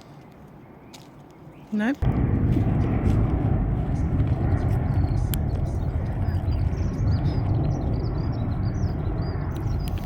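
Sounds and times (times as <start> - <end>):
small birds twittering: 0.0 - 2.0, 3.9 - 10.0
steady low rumble: 2.0 - 10.0.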